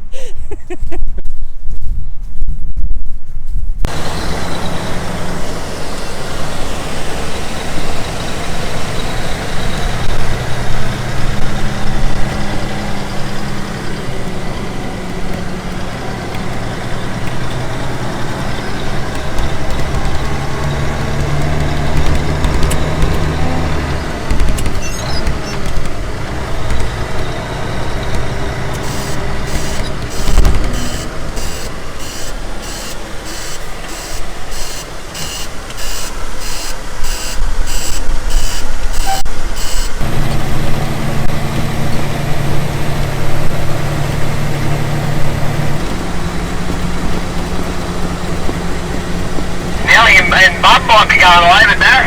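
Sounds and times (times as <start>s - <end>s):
heavy vehicle engine running: 3.8s - 52.0s
reversing alarm beeping: 28.8s - 40.0s.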